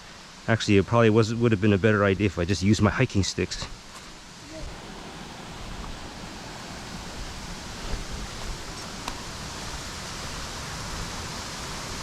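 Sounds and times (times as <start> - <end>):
waterfall rushing: 4.2 - 12.0.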